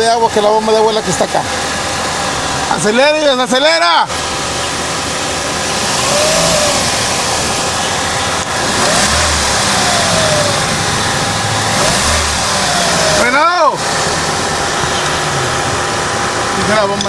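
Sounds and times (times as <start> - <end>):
car engine revving: 4.1 - 17.0.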